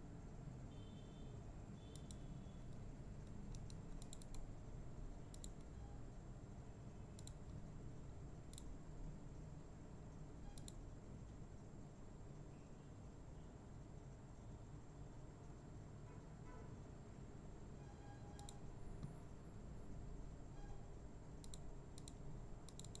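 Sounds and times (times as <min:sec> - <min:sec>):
computer mouse clicking: 0:01.9 - 0:04.5, 0:05.2 - 0:05.7, 0:07.1 - 0:07.6, 0:08.5 - 0:08.8, 0:10.5 - 0:10.8, 0:18.3 - 0:19.2, 0:21.4 - 0:23.0.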